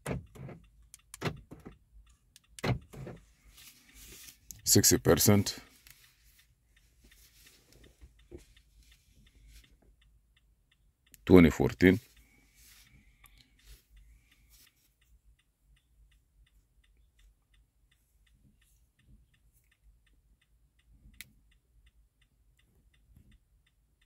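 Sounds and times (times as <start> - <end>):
hazard light flasher ticking: 0.2 - 3.3.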